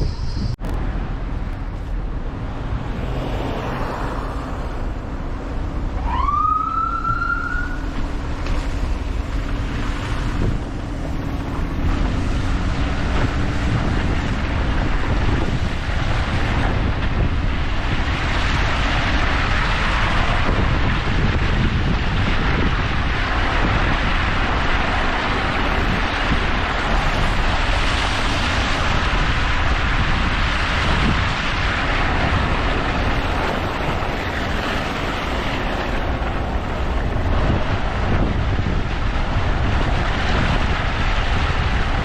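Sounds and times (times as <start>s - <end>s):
street traffic: 0.0s - 42.0s
wind: 0.0s - 42.0s
rising siren whoop: 6.0s - 8.0s.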